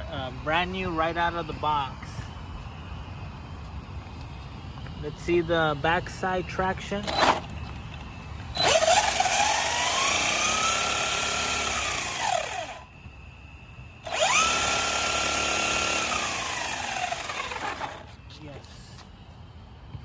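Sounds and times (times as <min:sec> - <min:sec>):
electric motor whining: 0:08.4 - 0:13.0, 0:14.0 - 0:18.2.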